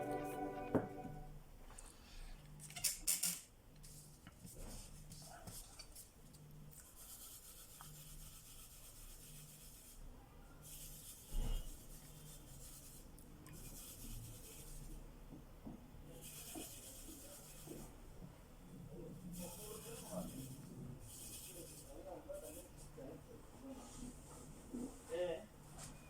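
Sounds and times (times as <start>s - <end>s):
faint scratching and rubbing: 6.9s - 15.0s, 16.1s - 18.0s, 18.9s - 25.3s.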